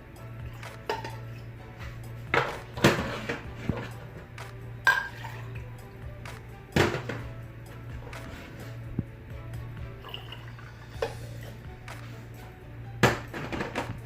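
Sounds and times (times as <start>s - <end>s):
background music: 0.0s - 14.0s
kitchenware clinking and knocking: 0.4s - 1.5s, 2.2s - 5.7s, 6.8s - 7.3s, 10.0s - 11.6s, 13.0s - 14.0s.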